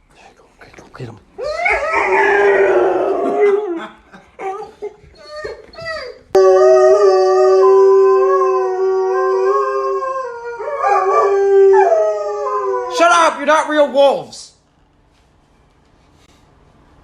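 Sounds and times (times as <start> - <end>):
dogs howling: 1.4 - 13.2.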